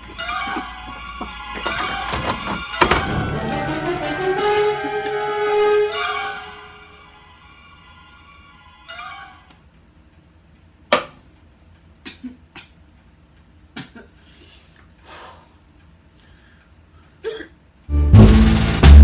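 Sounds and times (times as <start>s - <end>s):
man hiccuping: 13.7s - 14.2s, 17.2s - 17.6s
soft breaths: 14.2s - 17.2s.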